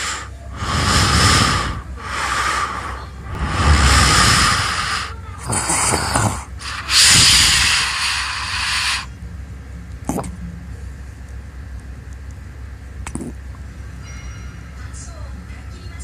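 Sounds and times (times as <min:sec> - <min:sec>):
person snoring: 0:00.0 - 0:09.1
snort: 0:00.0 - 0:09.1, 0:13.1 - 0:13.4.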